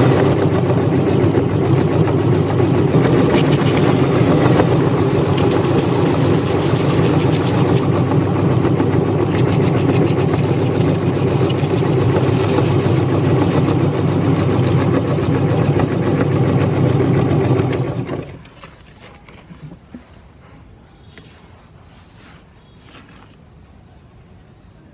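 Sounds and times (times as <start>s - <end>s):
meat grinder motor hum: 0.0s - 18.4s
cookie crunching in grinder: 1.9s - 18.8s.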